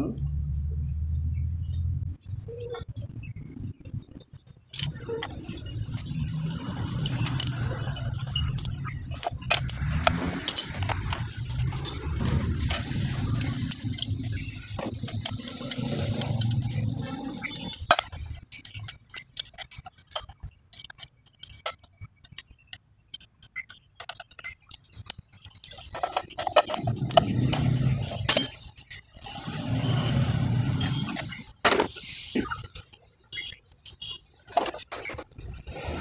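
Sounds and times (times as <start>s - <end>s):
metal hand tools clinking: 6.2s - 21.7s, 25.0s - 28.8s.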